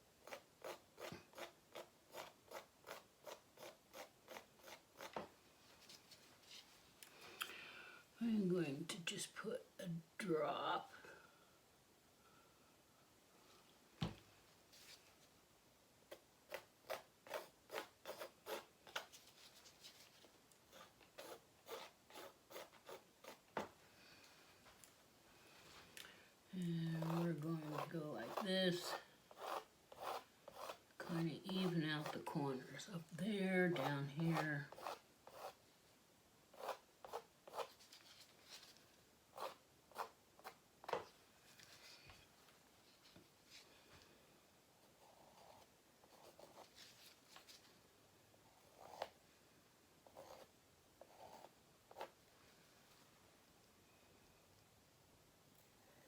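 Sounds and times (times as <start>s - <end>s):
faint paint scraping strokes: 16.1s - 23.5s, 26.8s - 35.6s, 36.5s - 44.2s, 44.8s - 47.8s.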